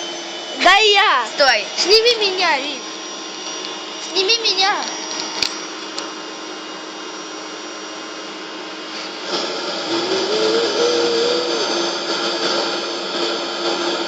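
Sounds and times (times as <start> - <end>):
vacuum cleaner running: 0.0 - 14.0
wavering tone: 9.8 - 12.6.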